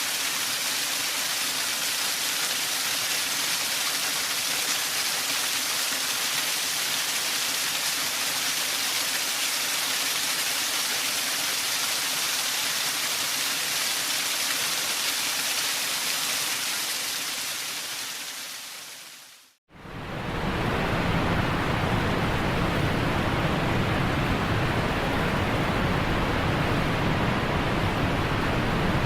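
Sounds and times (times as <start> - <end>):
waterfall rushing: 0.0 - 19.2.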